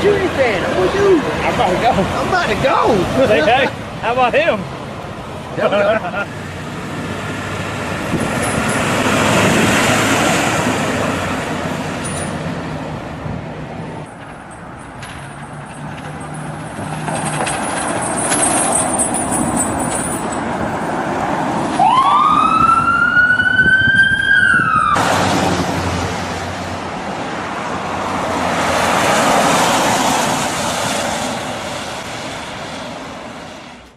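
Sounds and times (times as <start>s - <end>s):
road traffic passing: 0.0s - 33.9s
ambulance siren winding up: 21.8s - 25.0s.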